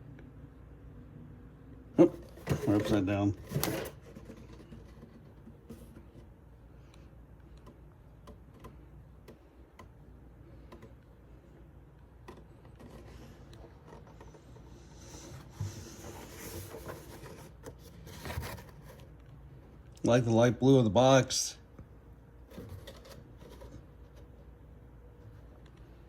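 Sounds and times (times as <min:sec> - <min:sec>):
box rubbing and scraping: 0:02.1 - 0:06.0, 0:12.9 - 0:19.1.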